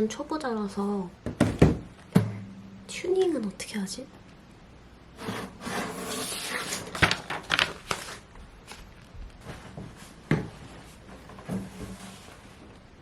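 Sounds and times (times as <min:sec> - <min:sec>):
rustling: 0:05.6 - 0:13.0.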